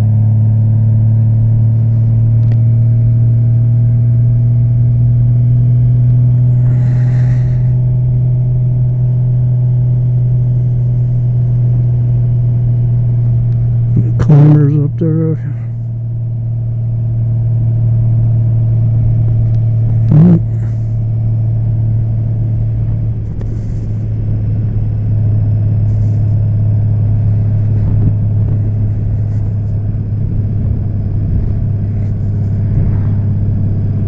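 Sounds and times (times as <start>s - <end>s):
motorcycle engine running: 0.0s - 34.0s
wind rumble on microphone: 17.8s - 34.0s.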